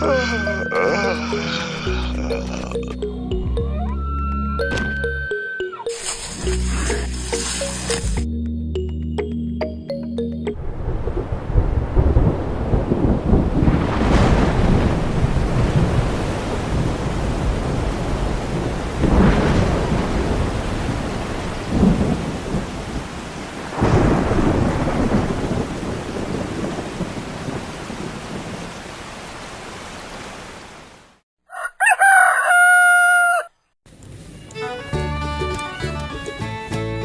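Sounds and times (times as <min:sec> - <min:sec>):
music: 0:00.0 - 0:10.6, 0:33.9 - 0:37.0
thunder rolling: 0:10.6 - 0:28.7
steady rain: 0:10.6 - 0:31.2
rooster crowing: 0:31.5 - 0:33.5.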